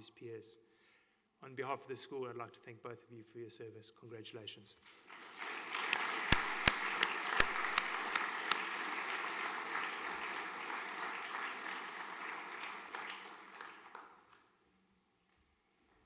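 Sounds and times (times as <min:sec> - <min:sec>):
audience applauding: 0:05.0 - 0:14.4.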